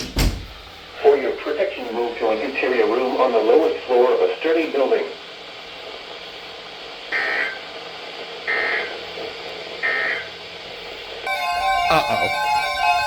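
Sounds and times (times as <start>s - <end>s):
shrill buzzing data tones: 11.3s - 13.0s.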